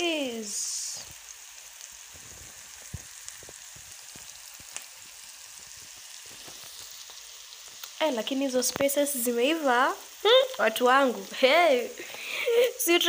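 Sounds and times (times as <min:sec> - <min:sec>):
onions sizzling in oil: 0:00.0 - 0:13.0.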